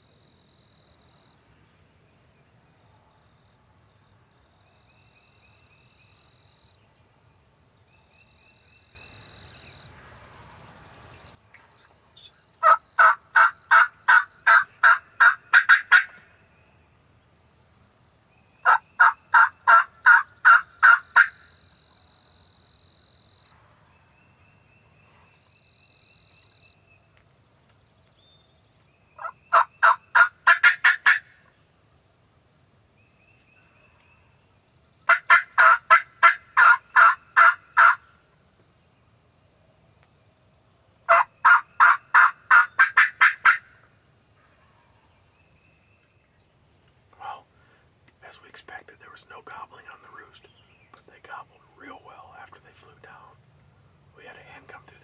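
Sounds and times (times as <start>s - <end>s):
turkey yelping: 12.6s - 16.2s, 18.6s - 21.4s, 29.2s - 31.3s, 35.1s - 38.0s, 41.1s - 43.6s.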